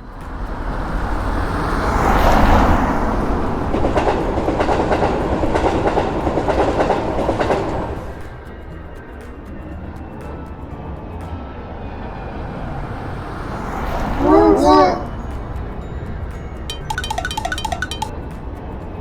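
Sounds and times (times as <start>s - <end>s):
train rushing past: 1.8s - 8.2s.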